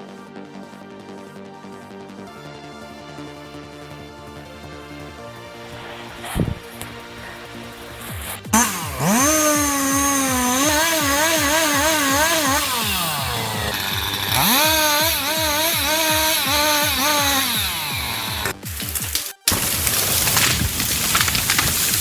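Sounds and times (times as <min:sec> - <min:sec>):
chainsaw cutting: 0:06.6 - 0:22.0.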